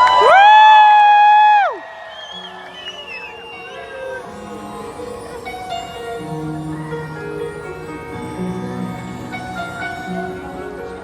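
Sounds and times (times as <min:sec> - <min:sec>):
soundtrack music with held notes: 0:02.4 - 0:11.0.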